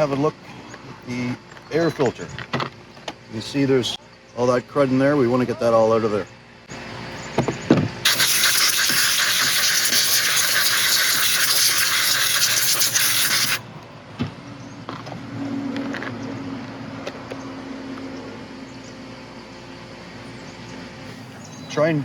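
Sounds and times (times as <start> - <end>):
compressed air blowgun hissing: 8.0 - 13.6.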